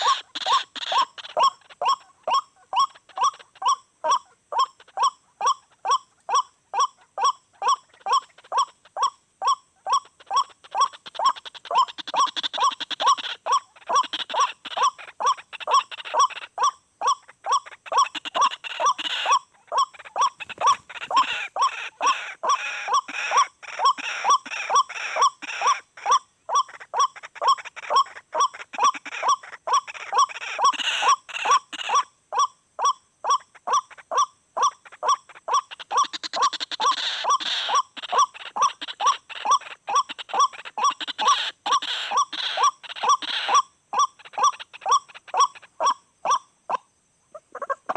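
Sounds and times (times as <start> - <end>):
waterhen harsh repeated call: 0.0 - 46.5
jumbled bird calling: 0.0 - 47.9.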